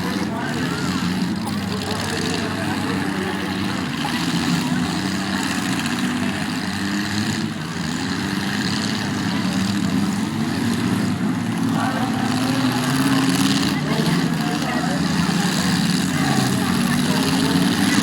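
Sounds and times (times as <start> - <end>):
car engines revving: 0.0 - 18.0.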